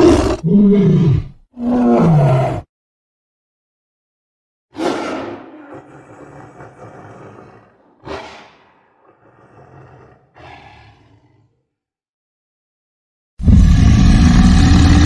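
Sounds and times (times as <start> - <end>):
tiger roaring: 0.0 - 2.7, 4.8 - 11.7, 13.4 - 15.0.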